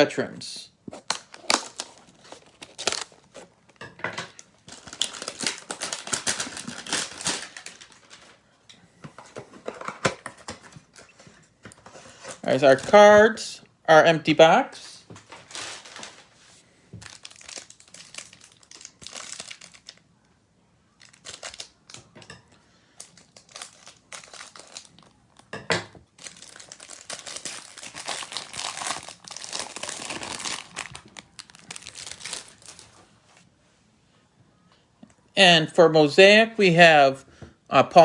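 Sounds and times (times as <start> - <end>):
packaging crinkling and rustling: 0.9 - 8.4, 15.2 - 20.0, 21.0 - 22.1, 23.0 - 25.5, 26.2 - 33.4.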